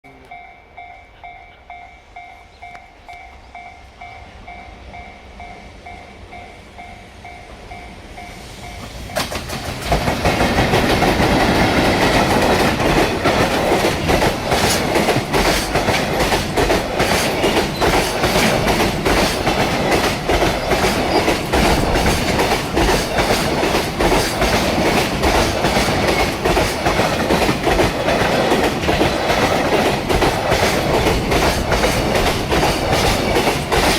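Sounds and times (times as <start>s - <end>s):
freight train rumble: 0.0s - 33.9s
train wheels clattering over rail joints: 8.8s - 33.9s.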